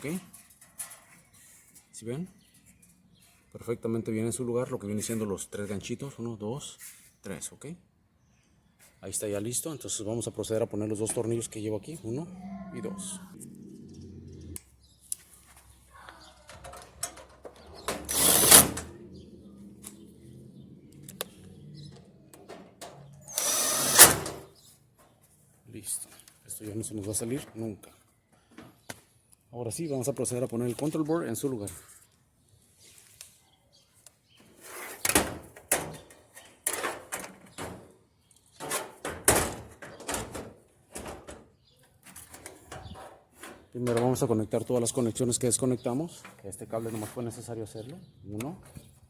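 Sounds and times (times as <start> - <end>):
appliance parts knocking and clattering: 16.4 - 19.0, 21.9 - 23.2, 35.3 - 38.0, 38.6 - 44.3
power screwdriver into sheet metal: 17.8 - 18.9, 23.2 - 24.5.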